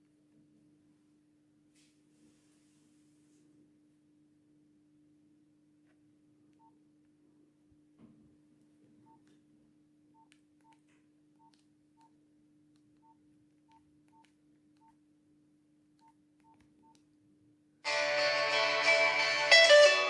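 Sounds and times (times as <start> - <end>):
faint steady hum: 0.0 - 17.8
keypad beeps: 13.0 - 15.0.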